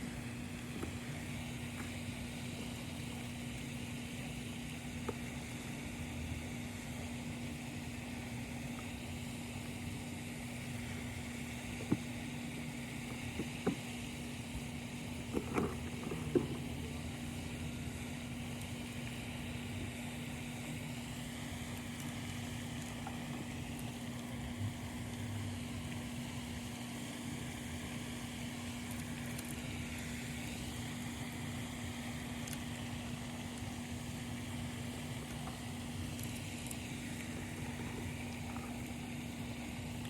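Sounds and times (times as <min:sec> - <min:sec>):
mechanical hum: 0:00.0 - 0:40.0.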